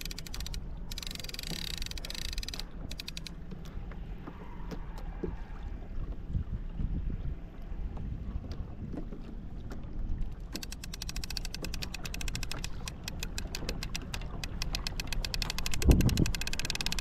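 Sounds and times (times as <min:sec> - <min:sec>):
fishing reel clicking: 0:00.0 - 0:03.4, 0:10.6 - 0:17.0
low wind: 0:00.0 - 0:17.0
water noise: 0:00.0 - 0:17.0.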